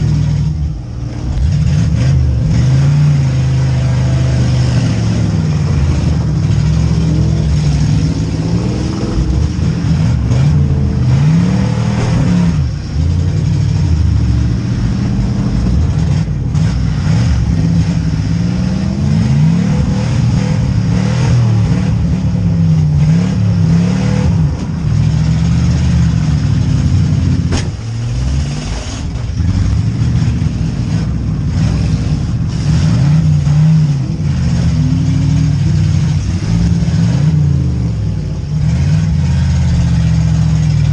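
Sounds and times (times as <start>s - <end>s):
car engines revving: 0.0s - 40.9s
sharp bang: 27.4s - 28.2s.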